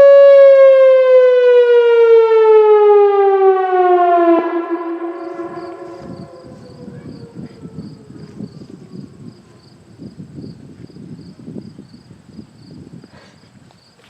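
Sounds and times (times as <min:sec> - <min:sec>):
warning siren winding down: 0:00.0 - 0:09.9
insects chirping: 0:04.4 - 0:14.0
low uneven rumble: 0:04.8 - 0:11.7.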